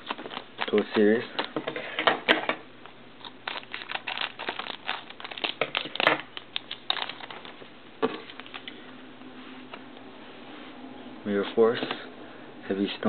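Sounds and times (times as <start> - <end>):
wrapper crinkling and tearing: 0.0 - 1.1, 3.2 - 7.6.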